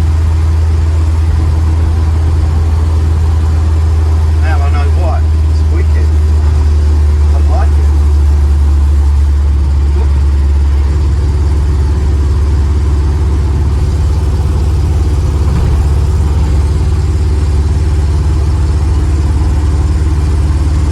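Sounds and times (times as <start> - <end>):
vehicle engine droning: 0.0 - 20.9.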